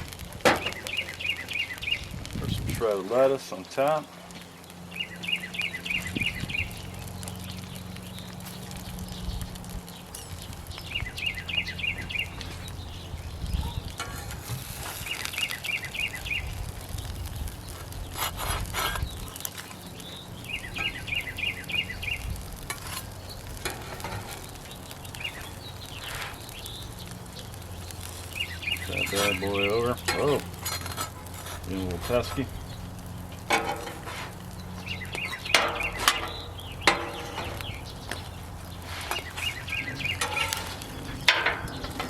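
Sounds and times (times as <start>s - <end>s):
food sizzling on griddle: 0.0s - 42.0s
bird trilling: 10.2s - 13.9s, 20.0s - 22.3s, 28.3s - 29.9s, 34.8s - 38.4s, 39.1s - 42.0s
metal spatula scraping: 14.0s - 15.1s, 18.1s - 19.1s, 30.0s - 32.3s, 33.5s - 34.4s.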